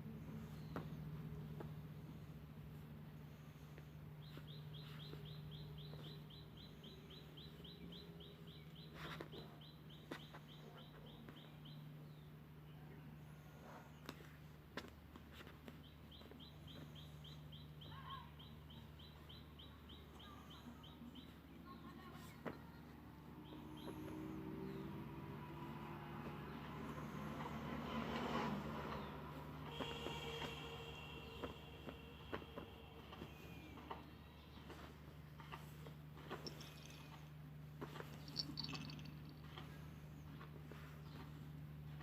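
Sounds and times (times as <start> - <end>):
steady low hum: 0.0 - 42.0
faint high chirping: 3.6 - 13.2, 15.8 - 25.0, 36.3 - 41.3.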